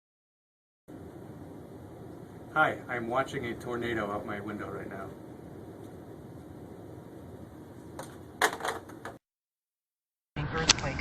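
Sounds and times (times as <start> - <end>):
steady noisy hum: 0.9 - 9.2.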